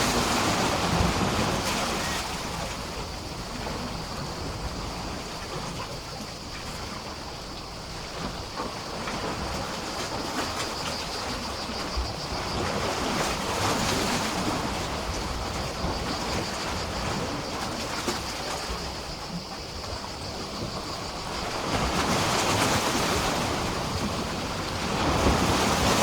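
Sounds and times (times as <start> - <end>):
sea waves splashing against pier: 0.0 - 6.8, 21.2 - 26.0.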